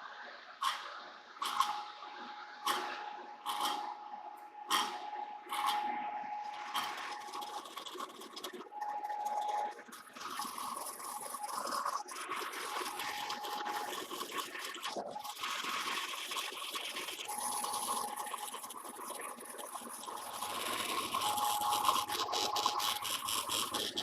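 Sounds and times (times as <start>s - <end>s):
faint whine: 0.0s - 24.0s
lathe cutting metal: 1.4s - 24.0s.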